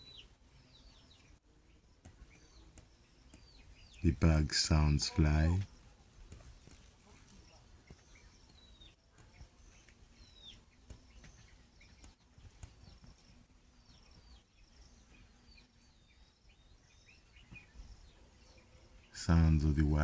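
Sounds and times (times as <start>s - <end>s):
faint bird chirping: 0.0s - 20.0s
faint low hum: 3.8s - 5.9s, 18.0s - 20.0s.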